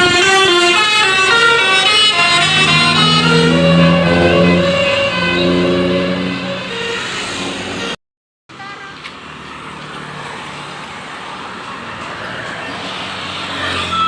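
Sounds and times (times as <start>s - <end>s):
road traffic passing: 0.0s - 14.0s
melodic pitched sound: 1.4s - 7.2s.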